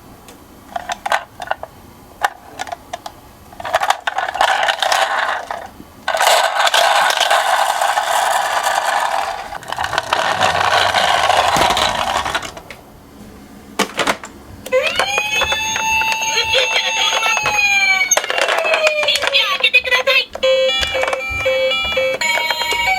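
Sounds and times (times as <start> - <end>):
toy cars rolling and rattling: 0.7 - 12.8, 13.8 - 22.9
siren sound: 14.7 - 19.1, 20.4 - 22.9.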